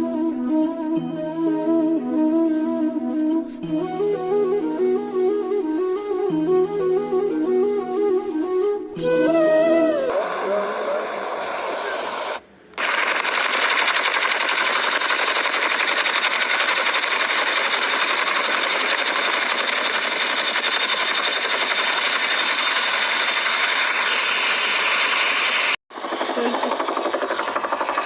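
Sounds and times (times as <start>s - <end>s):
high turbine whine: 9.0s - 28.0s
helicopter rotor chop: 10.0s - 28.0s.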